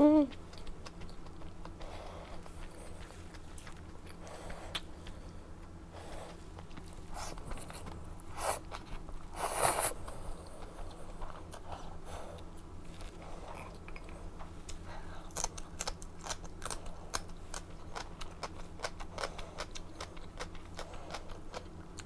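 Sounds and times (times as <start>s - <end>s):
person biting and chewing food: 11.3s - 22.0s.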